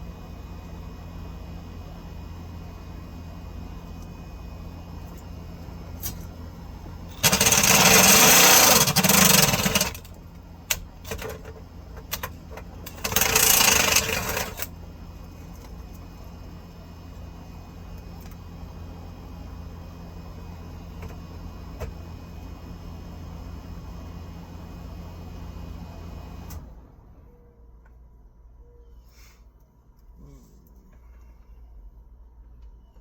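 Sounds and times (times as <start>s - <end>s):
handheld power tool running: 7.1s - 10.2s, 12.9s - 14.7s.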